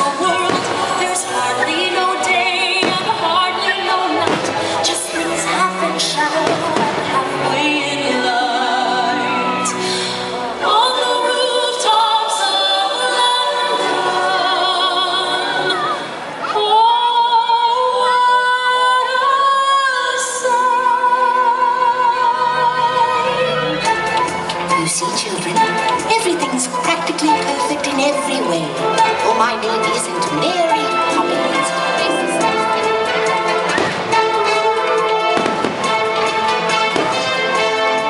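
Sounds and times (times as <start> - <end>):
orchestral music with singing voices: 0.0 - 38.0.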